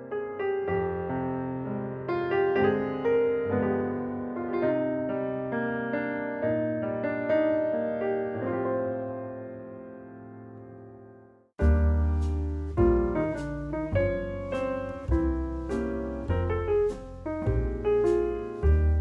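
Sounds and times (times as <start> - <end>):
bass line: 11.6 - 19.0.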